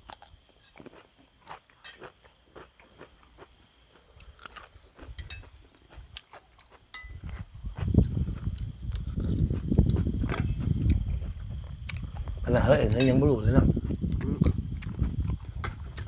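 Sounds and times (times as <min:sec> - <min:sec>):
person chewing: 0:00.0 - 0:12.4, 0:13.8 - 0:16.0
small mouth clicks: 0:14.1 - 0:16.0.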